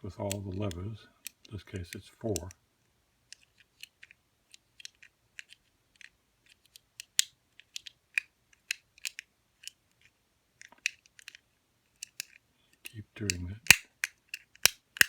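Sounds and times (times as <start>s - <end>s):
lock pick clicks: 13.2s - 15.0s.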